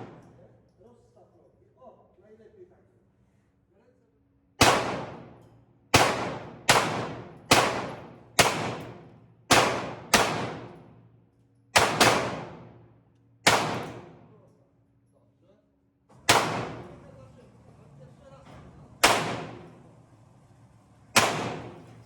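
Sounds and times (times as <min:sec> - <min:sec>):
pistol shots cracking: 0:00.0 - 0:00.4, 0:04.6 - 0:11.0, 0:11.7 - 0:12.8, 0:13.4 - 0:14.3, 0:16.2 - 0:17.0, 0:19.0 - 0:19.8, 0:21.2 - 0:22.0.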